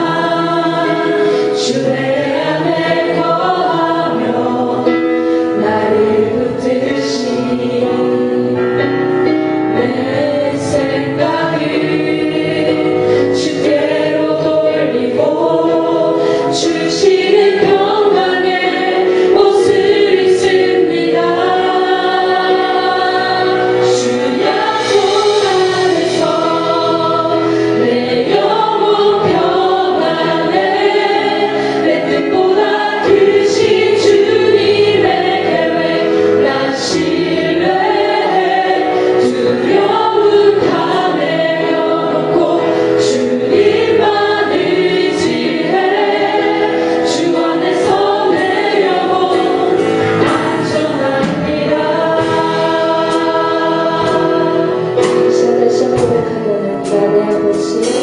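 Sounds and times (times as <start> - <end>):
many voices singing together: 0.0 - 58.0.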